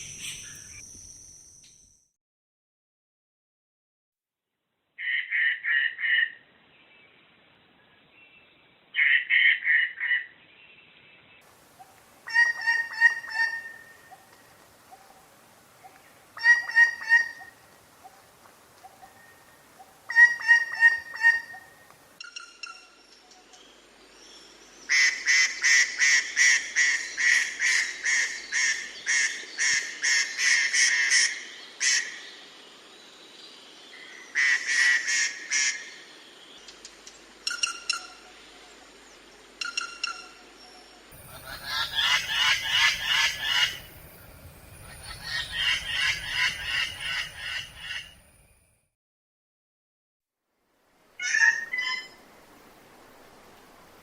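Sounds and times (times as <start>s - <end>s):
bird calling harsh repeated notes: 0.0s - 1.0s, 41.2s - 48.5s.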